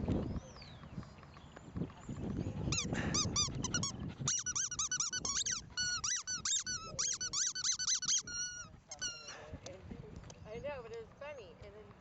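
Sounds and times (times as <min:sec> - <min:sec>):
dog whining: 0:02.8 - 0:09.3.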